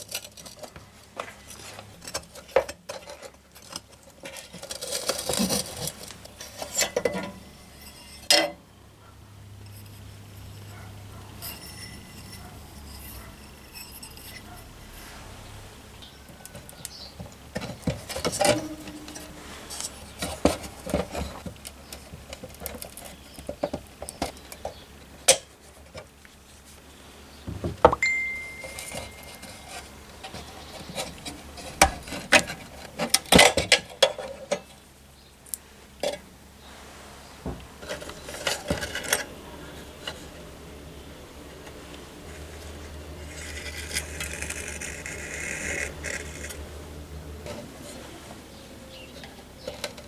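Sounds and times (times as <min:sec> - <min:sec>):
metal ringing: 0:18.2 - 0:21.0, 0:27.9 - 0:29.8.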